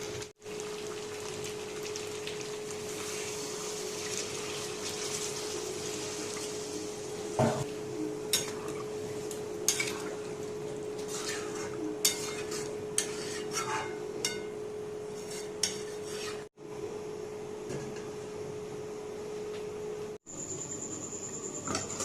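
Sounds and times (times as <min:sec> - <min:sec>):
metal spoon scraping a pot: 0:11.0 - 0:14.0, 0:15.1 - 0:16.5.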